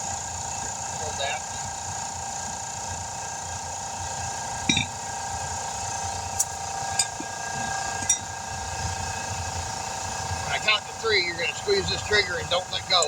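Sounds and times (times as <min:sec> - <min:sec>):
mechanical hum: 0:00.0 - 0:13.0
metallic clinks of tire tools: 0:04.6 - 0:05.0, 0:06.4 - 0:07.3, 0:08.0 - 0:08.4.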